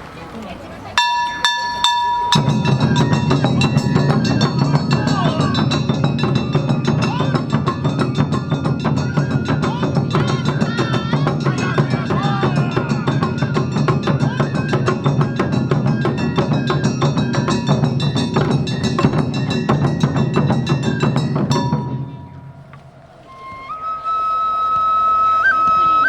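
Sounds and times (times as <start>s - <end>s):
hand gong clanging: 1.0s - 14.4s, 16.9s - 23.1s
taiko drums: 1.0s - 25.0s
high flute note: 21.6s - 26.0s.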